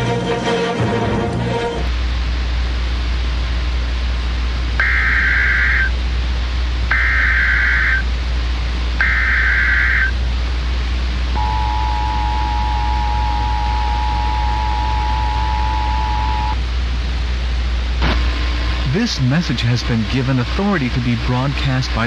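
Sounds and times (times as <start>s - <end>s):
steady hum and hiss: 0.0s - 22.0s
two-tone attention signal: 4.8s - 5.9s, 6.9s - 8.0s, 9.0s - 10.2s, 11.4s - 16.6s
warbling digital data tones: 4.8s - 5.9s, 6.9s - 8.1s, 9.0s - 10.2s, 11.4s - 16.6s.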